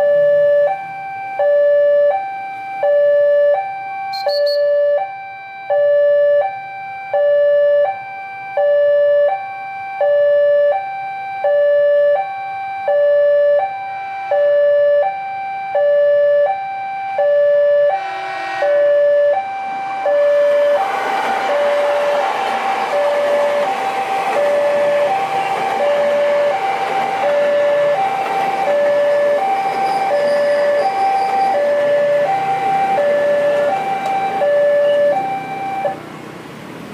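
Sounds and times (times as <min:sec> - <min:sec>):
two-tone crossing alarm: 0:00.0 - 0:36.0
train passing rushing noise: 0:17.8 - 0:36.9.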